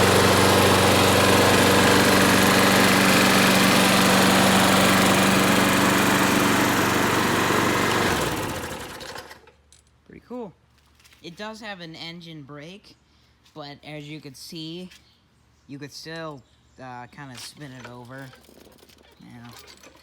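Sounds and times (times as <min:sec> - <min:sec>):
mower engine running: 0:00.0 - 0:09.5.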